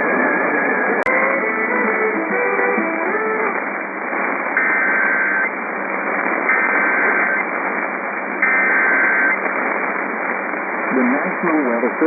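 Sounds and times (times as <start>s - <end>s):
radio receiver hiss: 0.0s - 12.0s
warbling digital data tones: 4.6s - 5.5s, 6.5s - 7.5s, 8.4s - 9.4s.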